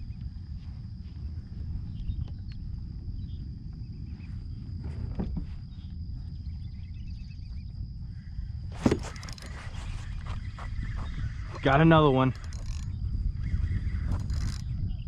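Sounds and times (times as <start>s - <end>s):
high whine: 0.0s - 15.0s
low rumbling noise: 0.0s - 15.0s
small ticks: 1.9s - 2.8s, 9.0s - 15.0s.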